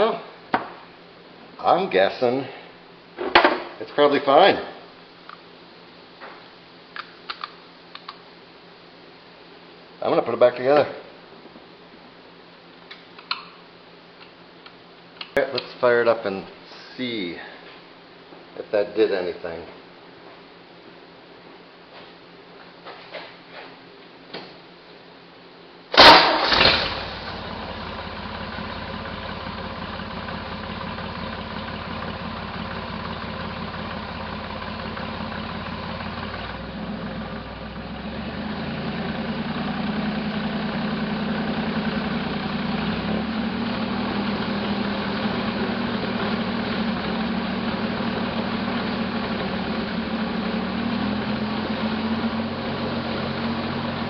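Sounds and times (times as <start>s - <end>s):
engine cranking and catching: 26.0s - 27.2s
misfiring engine idling: 26.0s - 54.0s.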